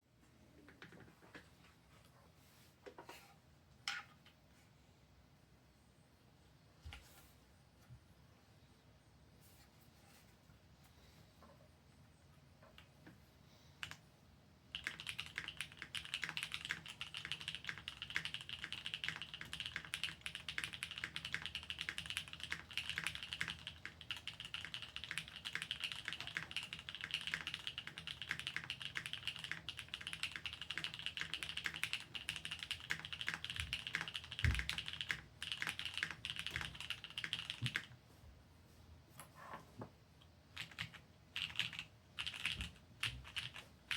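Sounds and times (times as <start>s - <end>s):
fast mechanical keyboard typing: 14.7s - 37.9s, 40.6s - 43.9s.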